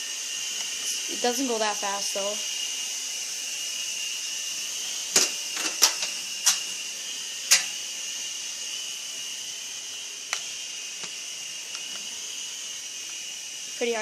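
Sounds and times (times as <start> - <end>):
toy helicopter rotors whining: 0.0 - 14.0.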